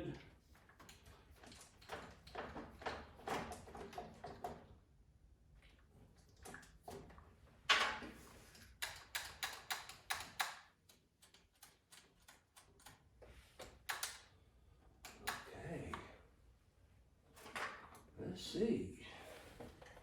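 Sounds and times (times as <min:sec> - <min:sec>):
small parts clicking and tapping: 0:07.7 - 0:14.4, 0:15.0 - 0:15.5.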